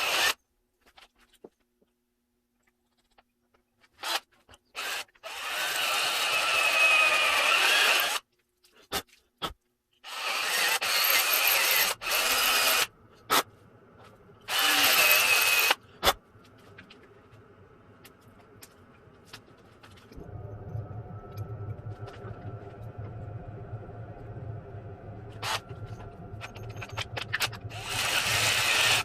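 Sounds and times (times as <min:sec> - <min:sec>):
electric drill running: 0:00.0 - 0:00.4, 0:04.8 - 0:08.2, 0:10.0 - 0:12.9, 0:14.5 - 0:15.8, 0:26.5 - 0:29.0.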